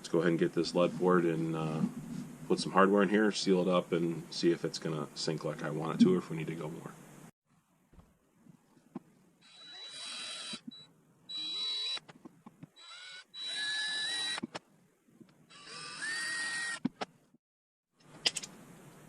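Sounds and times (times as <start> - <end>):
small power drill whining: 9.4 - 12.1, 12.7 - 14.5, 15.5 - 16.8.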